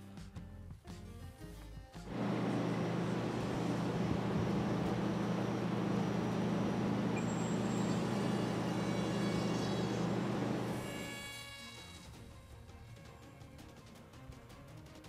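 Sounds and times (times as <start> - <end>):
model plane electric motor drone: 2.1 - 12.1.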